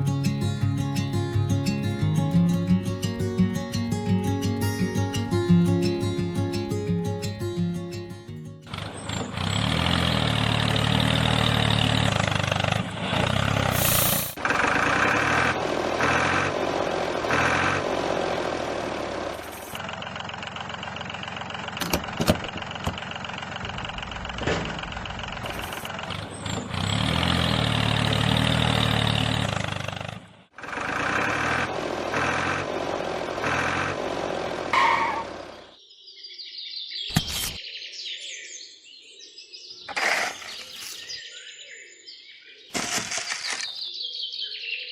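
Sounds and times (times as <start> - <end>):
tractor engine chugging: 8.6 - 35.7.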